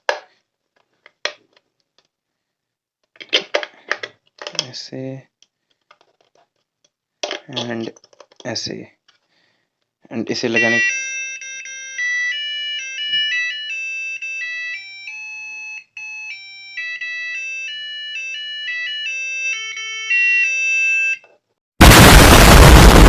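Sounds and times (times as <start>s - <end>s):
alarm clock electronic beeping melody: 10.5s - 21.2s
harsh burst of noise: 21.8s - 23.0s.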